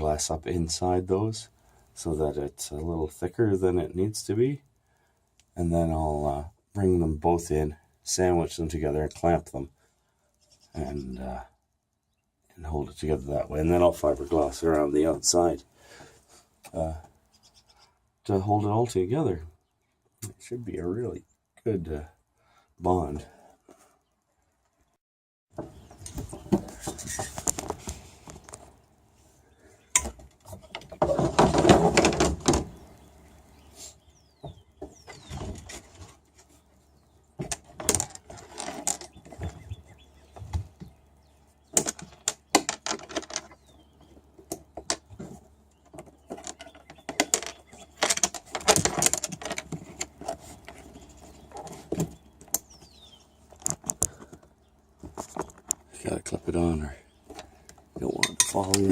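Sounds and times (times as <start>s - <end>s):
rustling: 25.6s - 56.4s.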